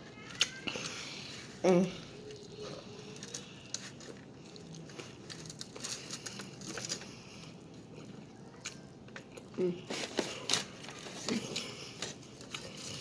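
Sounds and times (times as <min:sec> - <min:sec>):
eating crunches and crinkles: 0:00.1 - 0:13.0.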